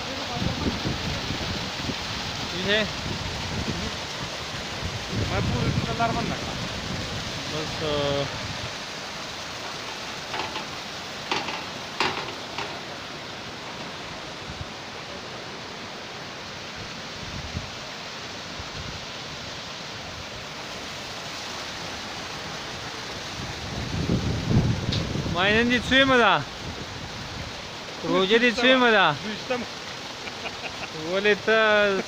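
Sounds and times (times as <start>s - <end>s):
flowing water: 0.0s - 32.0s
short sharp knocks: 10.3s - 12.8s.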